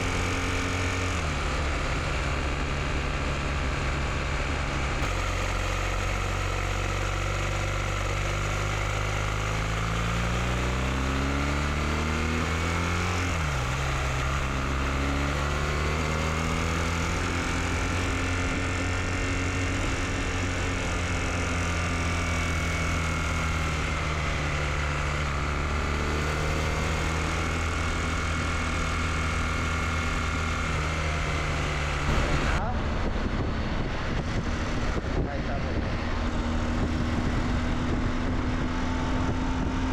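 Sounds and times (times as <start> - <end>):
motorcycle engine revving: 0.0 - 39.9
wind noise: 32.1 - 39.9.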